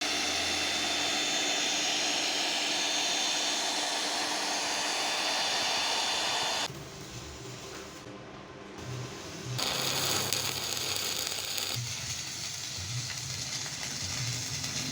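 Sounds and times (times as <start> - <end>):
welding arc hissing crackle: 9.1 - 14.9.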